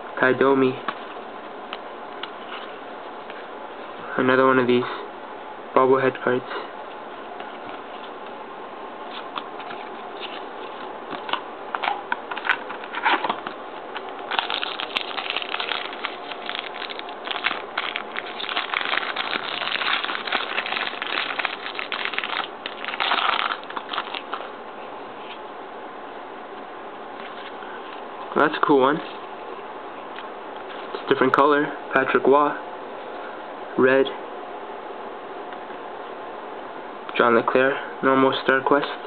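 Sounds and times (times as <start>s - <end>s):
cards being shuffled: 9.0s - 24.5s
card pack wrapper crinkling: 9.6s - 24.5s.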